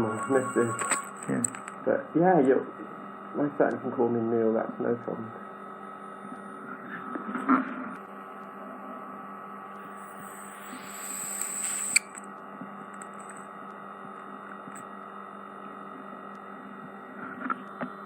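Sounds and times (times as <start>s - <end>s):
hiss with high whistle: 0.0s - 1.2s, 9.8s - 12.2s
steady electrical hum: 0.0s - 6.4s.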